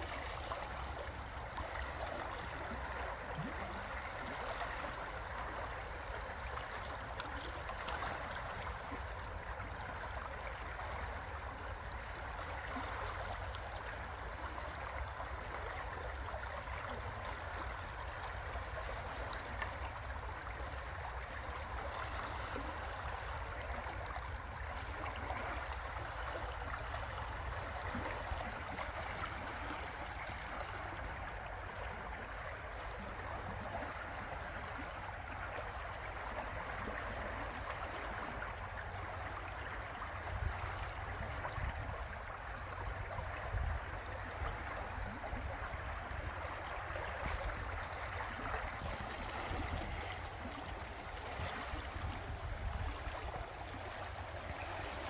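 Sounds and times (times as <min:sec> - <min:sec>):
river water rushing: 0:26.9 - 0:34.9.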